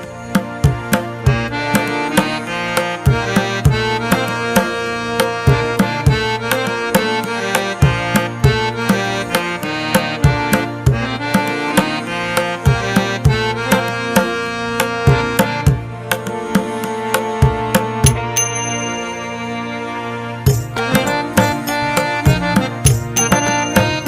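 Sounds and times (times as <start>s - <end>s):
held melody notes: 0.0s - 24.0s
drum strikes: 12.7s - 19.2s, 20.5s - 24.0s.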